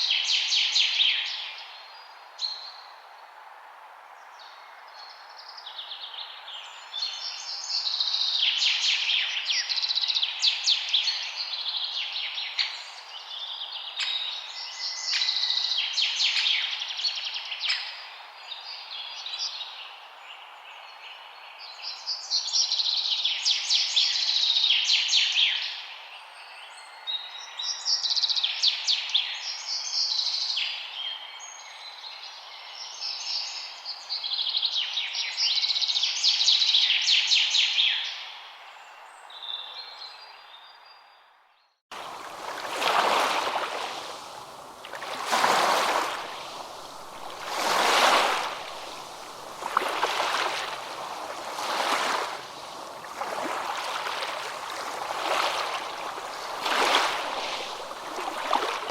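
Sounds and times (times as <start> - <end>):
songbirds chirping and trilling: 36.9 - 58.9
steady background hiss: 42.0 - 58.9.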